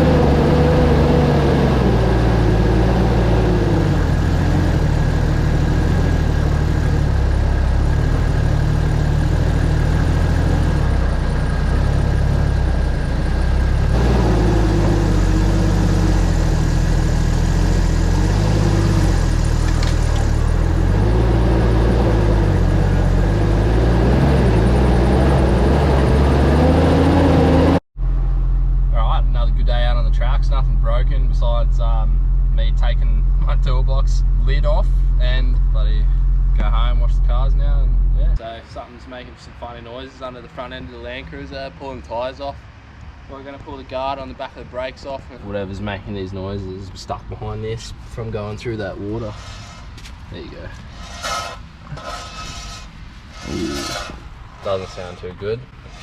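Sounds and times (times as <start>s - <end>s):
diesel engine revving under load: 0.0s - 28.6s, 48.8s - 56.0s.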